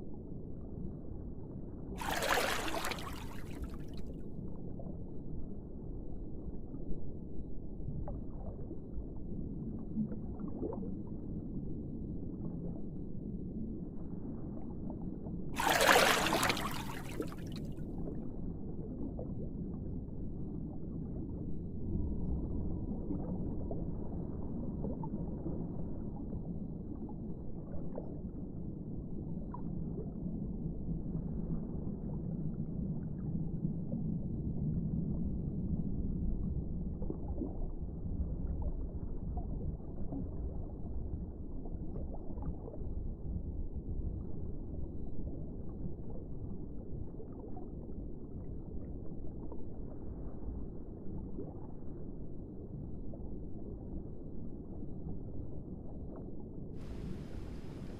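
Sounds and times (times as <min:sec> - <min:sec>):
underwater rumble and gurgling: 0:00.0 - 0:57.9
rushing burst of water: 0:02.0 - 0:03.8, 0:15.6 - 0:17.7, 0:56.8 - 0:57.9.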